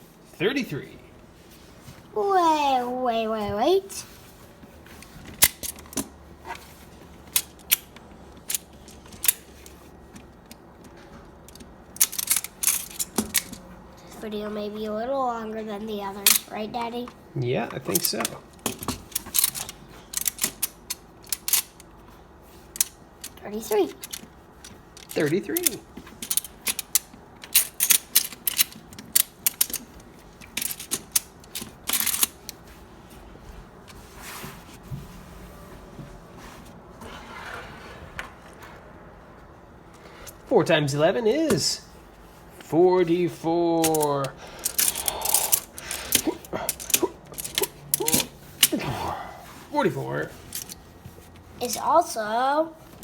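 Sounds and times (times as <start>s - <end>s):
plastic toy blocks clicking: 11.4s - 13.6s, 17.9s - 21.8s, 24.0s - 32.5s, 43.8s - 48.8s.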